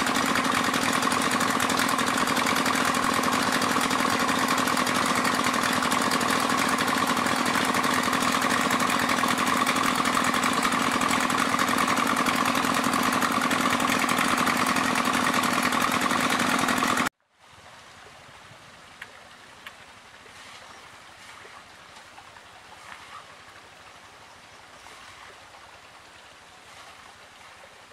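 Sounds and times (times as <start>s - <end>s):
pump engine running loudly: 0.0s - 17.1s.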